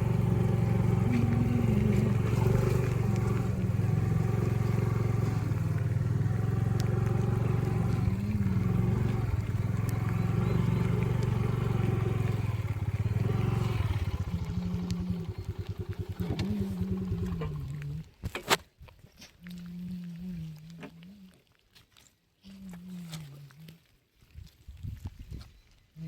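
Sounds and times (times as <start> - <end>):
motorcycle engine running: 0.0 - 18.2.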